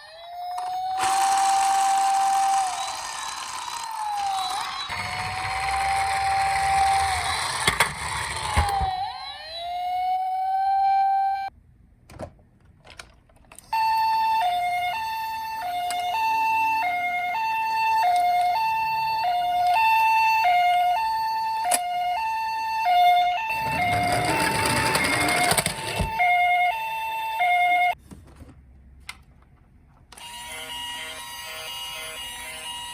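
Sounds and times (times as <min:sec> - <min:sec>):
two-tone high-low siren: 0:00.0 - 0:11.5, 0:13.7 - 0:28.0
wailing toy siren: 0:00.0 - 0:11.5, 0:13.7 - 0:28.0, 0:30.2 - 0:32.9.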